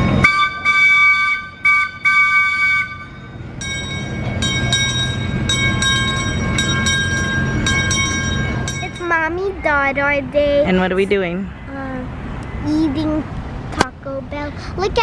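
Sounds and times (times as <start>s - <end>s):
train horn blasts: 0.0s - 3.4s.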